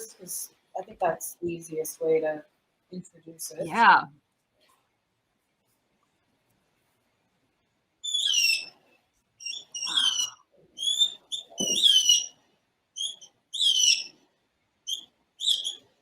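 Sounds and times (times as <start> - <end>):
electronic bird chirps: 8.0 - 8.7, 9.4 - 12.3, 13.0 - 14.1, 14.9 - 15.8.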